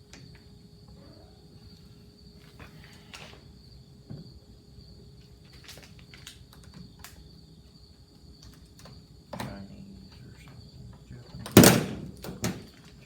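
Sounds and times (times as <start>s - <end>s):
crickets chirring: 0.0s - 13.0s.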